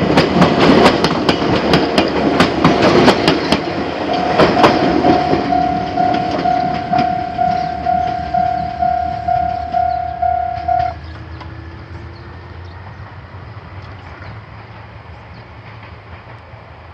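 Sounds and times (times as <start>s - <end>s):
low train rumble: 0.0s - 16.9s
railroad crossing alarm ringing: 3.5s - 11.0s.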